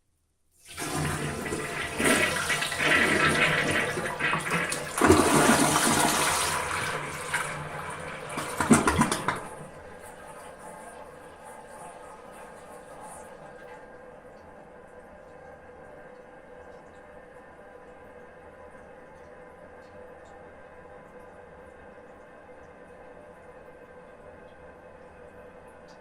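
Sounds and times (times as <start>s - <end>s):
toilet tank refilling hiss: 0.6s - 13.8s
toilet flushing: 0.6s - 14.0s.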